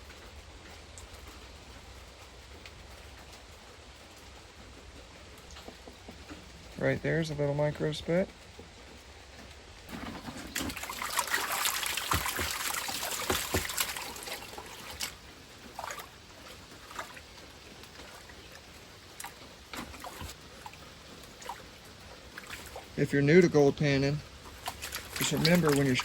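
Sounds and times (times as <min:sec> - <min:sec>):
water sloshing in a pan: 0:09.9 - 0:26.0.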